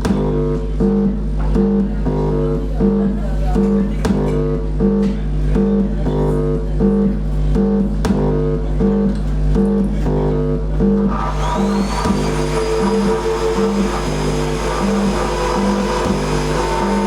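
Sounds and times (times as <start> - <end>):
music with repeating low notes: 0.0 - 17.0
low drone: 11.1 - 17.0
vacuum cleaner motor whine: 11.1 - 17.0.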